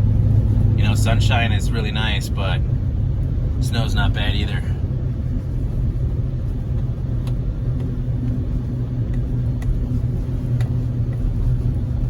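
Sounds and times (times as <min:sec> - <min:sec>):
car engine and road drone: 0:00.0 - 0:12.0.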